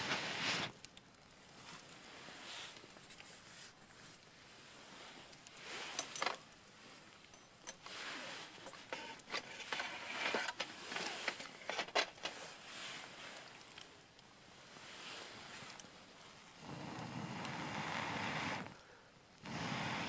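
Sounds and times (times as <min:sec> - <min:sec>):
packaging rustling and scraping: 0:07.7 - 0:13.6.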